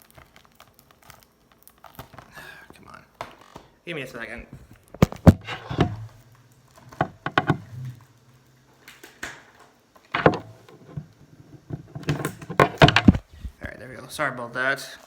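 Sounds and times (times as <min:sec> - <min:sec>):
plastic shrink wrap crinkling: 0:00.0 - 0:03.5.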